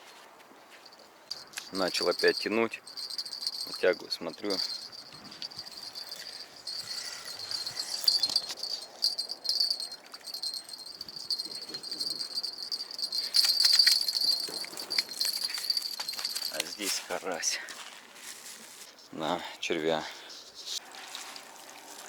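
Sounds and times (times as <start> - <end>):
insect chirring: 1.3 - 16.8.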